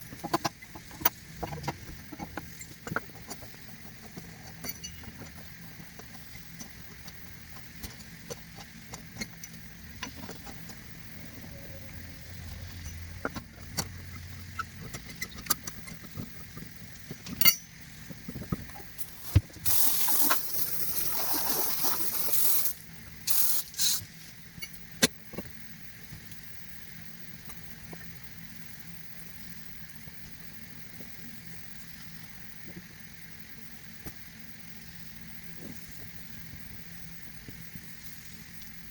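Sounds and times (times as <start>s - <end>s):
hissing spray: 19.0s - 24.2s.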